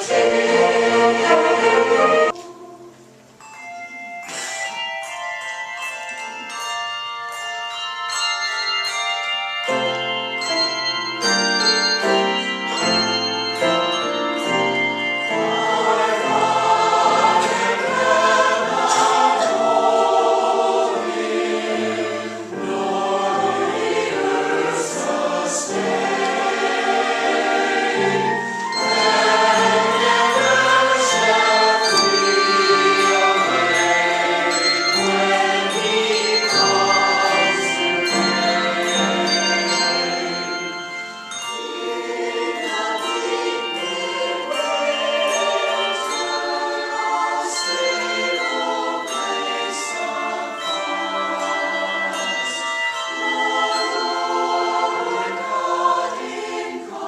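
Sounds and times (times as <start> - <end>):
choir singing: 0.0 - 3.3, 8.8 - 57.0.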